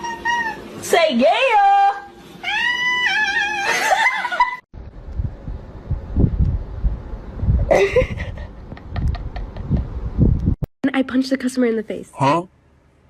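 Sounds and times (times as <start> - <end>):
cat meowing: 2.4 - 3.7
low muffled thumps and rumbling: 4.8 - 10.7.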